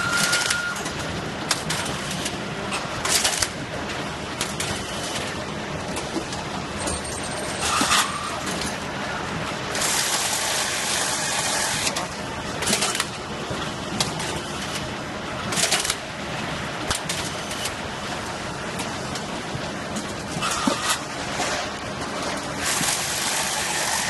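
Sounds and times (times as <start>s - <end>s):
machine clicks: 3.0s - 3.6s, 15.5s - 16.0s.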